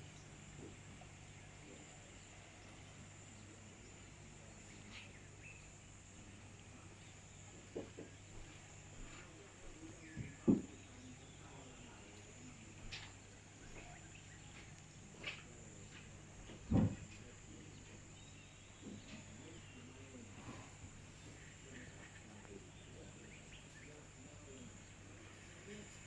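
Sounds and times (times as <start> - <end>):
short thumps: 16.4 - 17.2.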